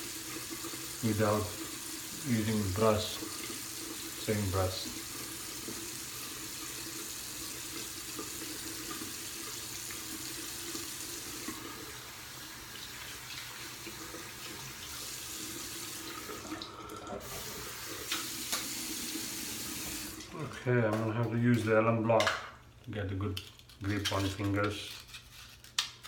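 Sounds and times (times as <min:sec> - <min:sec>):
tap water running into sink: 0:00.0 - 0:20.4.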